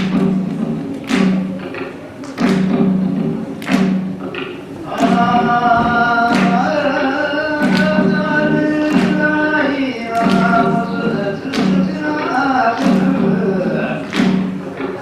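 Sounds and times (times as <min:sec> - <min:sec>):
sharp rhythmic knocks: 0:00.0 - 0:15.0
voices singing together: 0:04.8 - 0:14.1.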